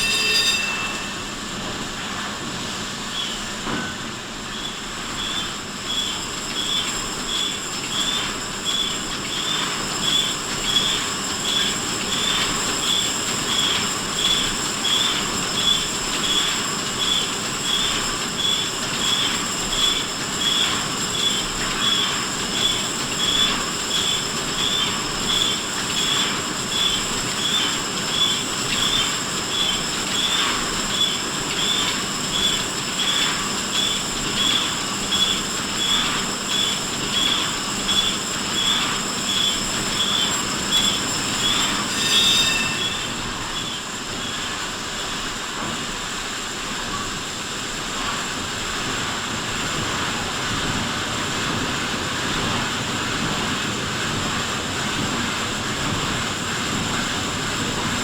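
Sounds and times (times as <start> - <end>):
high-pitched squeak: 0.0 - 2.3, 37.9 - 44.6
machinery running: 0.0 - 5.4, 31.2 - 44.6
thin high whine: 0.0 - 6.0, 31.0 - 44.9.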